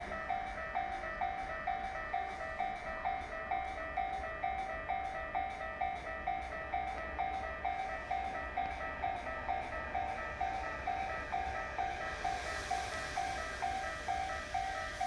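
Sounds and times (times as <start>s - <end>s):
level-crossing alarm clanging: 0.0s - 15.0s.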